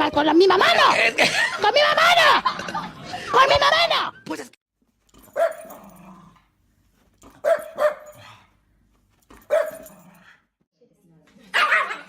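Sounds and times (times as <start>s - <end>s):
dog barking: 5.3s - 5.8s, 7.4s - 8.2s, 9.5s - 10.0s, 11.5s - 12.0s.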